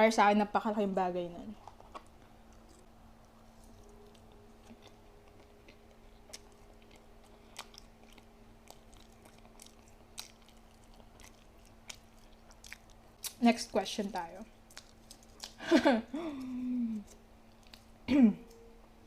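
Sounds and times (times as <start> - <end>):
low steady hum: 0.0 - 19.0
faint chewing: 1.5 - 18.6.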